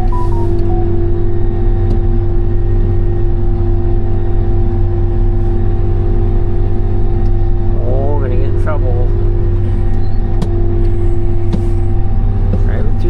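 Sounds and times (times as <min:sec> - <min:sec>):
short beep: 0:00.0 - 0:01.1
combine harvester engine droning: 0:00.0 - 0:13.0.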